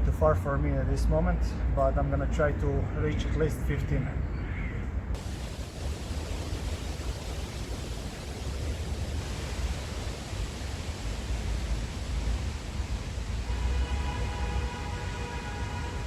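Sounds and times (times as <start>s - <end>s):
steady multi-tone whine: 5.2s - 13.3s
wind blowing on microphone: 5.2s - 16.0s.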